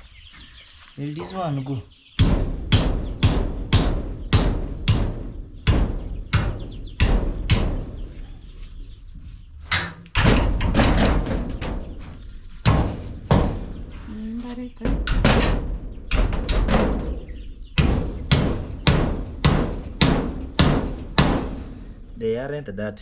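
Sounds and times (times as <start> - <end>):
hammer striking nails into wood: 2.2 - 5.1, 17.8 - 21.6.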